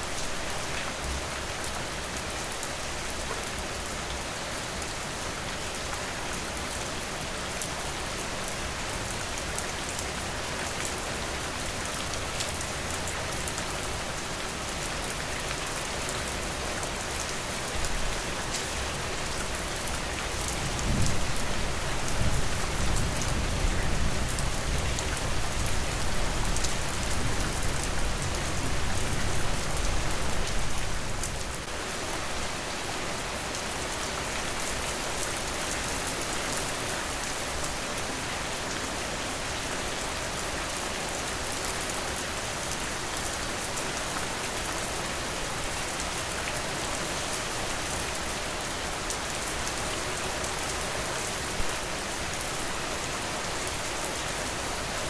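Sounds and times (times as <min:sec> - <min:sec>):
rain falling on porch and forest: 0:00.0 - 0:55.0.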